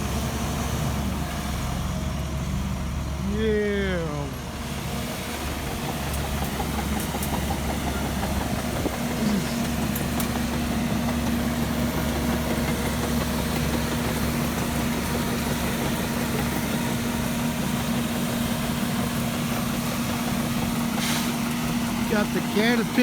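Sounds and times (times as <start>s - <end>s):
bulldozer diesel engine rumbling: 0.0s - 23.0s.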